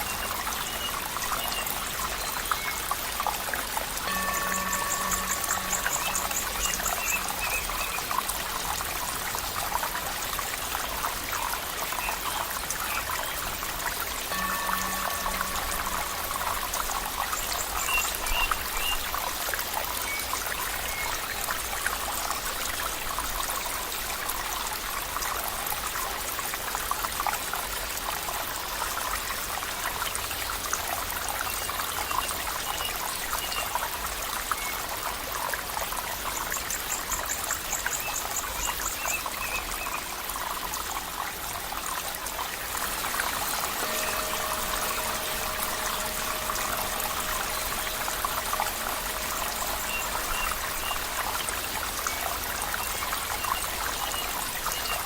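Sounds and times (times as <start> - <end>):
stream water trickling: 0.0 - 55.0
faint bird chirps: 42.8 - 55.0.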